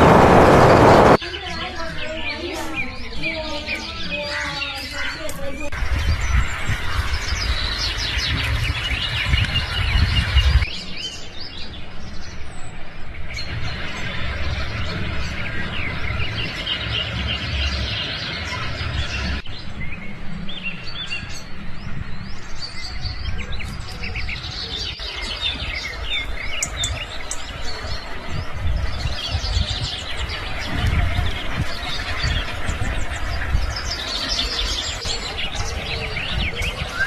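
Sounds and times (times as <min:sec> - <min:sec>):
steady low rumble: 0:00.0 - 0:01.2
waterbirds chirping and calling: 0:00.1 - 0:37.0.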